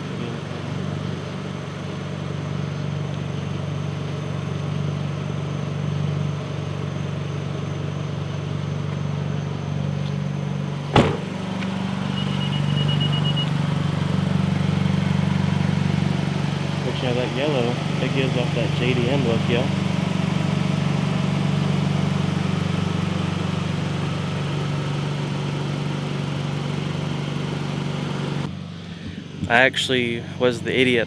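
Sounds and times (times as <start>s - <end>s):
car engine droning: 0.0s - 31.0s
sharp thump: 10.8s - 12.2s
high beeps: 12.2s - 13.5s.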